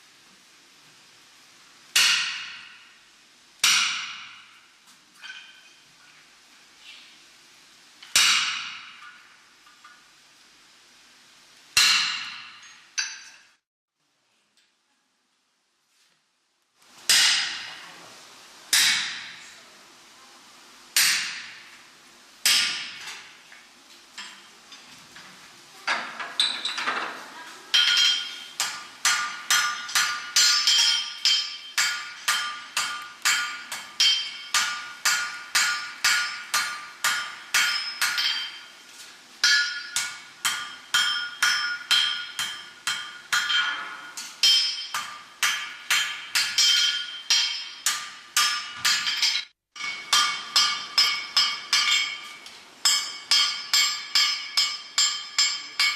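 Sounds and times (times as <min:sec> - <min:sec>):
hammer striking iron on anvil: 0:01.9 - 0:03.0, 0:03.6 - 0:05.7, 0:08.0 - 0:09.4, 0:11.8 - 0:13.5, 0:17.1 - 0:17.8, 0:18.7 - 0:19.4, 0:21.0 - 0:21.7, 0:22.4 - 0:23.3, 0:27.7 - 0:38.7, 0:39.4 - 0:55.9.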